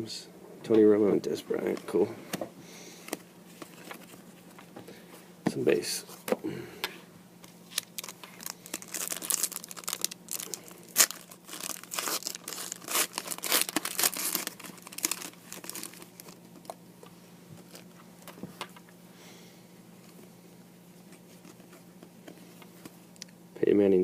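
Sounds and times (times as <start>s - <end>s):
cards and packaging rustling: 3.0s - 4.8s, 7.7s - 18.8s.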